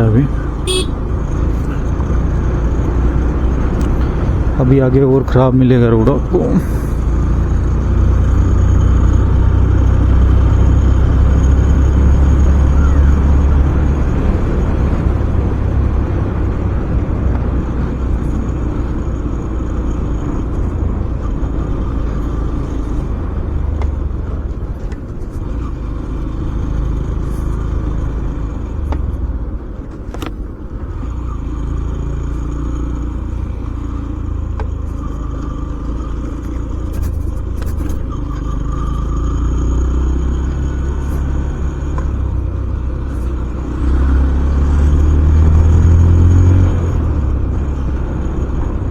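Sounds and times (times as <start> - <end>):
motorcycle engine running: 0.0 - 48.9
road noise on rough road: 0.0 - 48.9.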